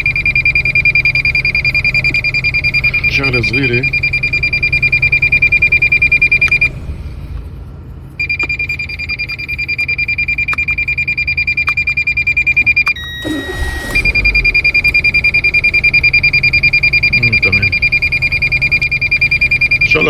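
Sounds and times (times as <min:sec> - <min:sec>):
high-pitched warning buzzer beeping: 0:00.0 - 0:06.8, 0:08.2 - 0:20.0
car engine idling: 0:00.0 - 0:11.4, 0:13.0 - 0:20.0.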